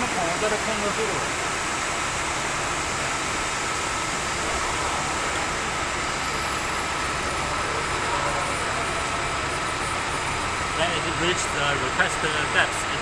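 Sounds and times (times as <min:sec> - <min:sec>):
faint very high whine: 0:00.0 - 0:06.6.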